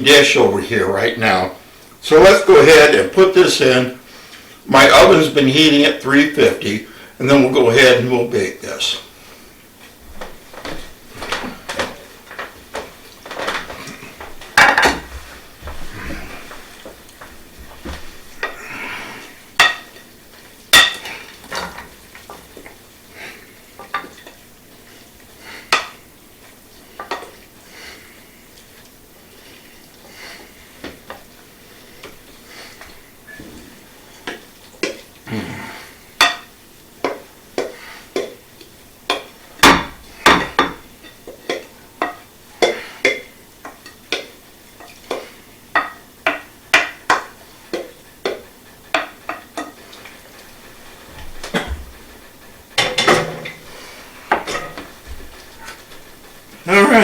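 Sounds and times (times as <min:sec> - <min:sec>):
utensil clinking on baking dish: 0:19.6 - 0:20.2, 0:20.8 - 0:22.4, 0:36.2 - 0:38.4, 0:39.1 - 0:50.2, 0:52.8 - 0:53.7.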